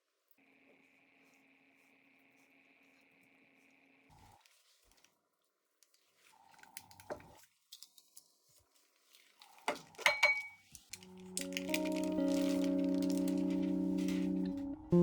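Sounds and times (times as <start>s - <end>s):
kitchenware clinking and knocking: 10.0s - 10.6s
music: 10.9s - 15.0s.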